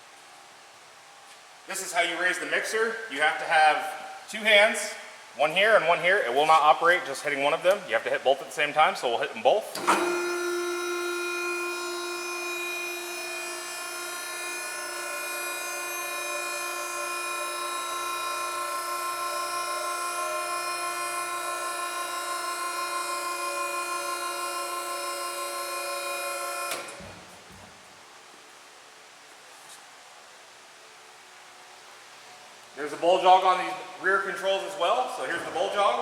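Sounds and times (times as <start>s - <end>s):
mixer lift drive whining: 9.6s - 27.9s.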